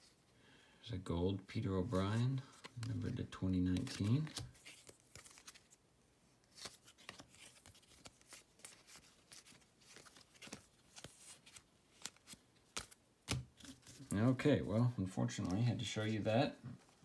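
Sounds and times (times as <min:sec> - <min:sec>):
trading cards clicking and rustling: 0:01.9 - 0:05.8, 0:06.5 - 0:14.2.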